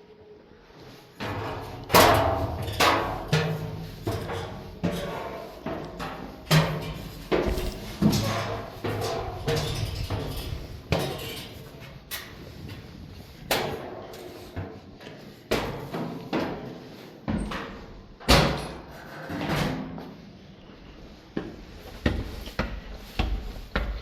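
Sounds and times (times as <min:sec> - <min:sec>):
knocks and thuds: 0:07.3 - 0:11.2.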